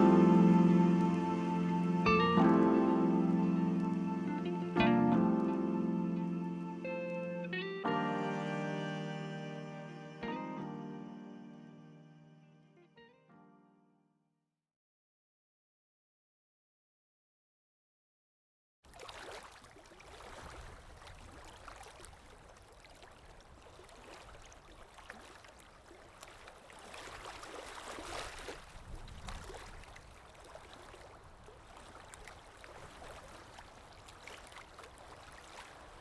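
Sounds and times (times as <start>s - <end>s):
stream babbling: 0.0s - 11.4s, 29.6s - 36.0s.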